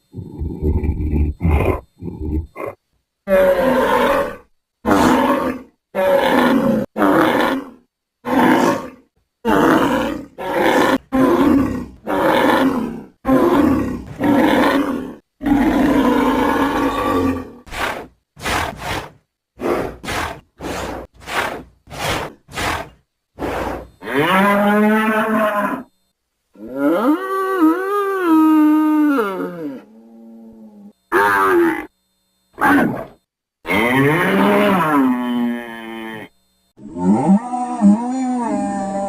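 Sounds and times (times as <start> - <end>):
bulls bellowing: 9.5 - 25.9, 32.6 - 39.0.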